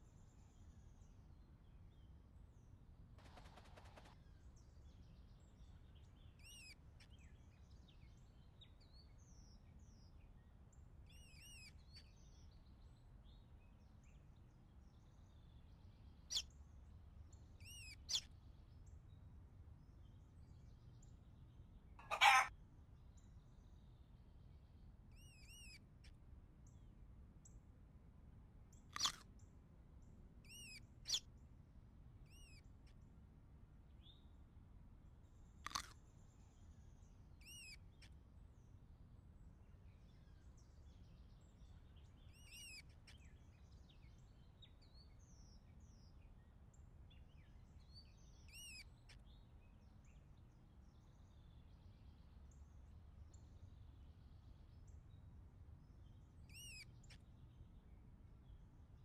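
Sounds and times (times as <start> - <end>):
bird chirping faintly: 22.0 - 22.5, 56.0 - 58.6.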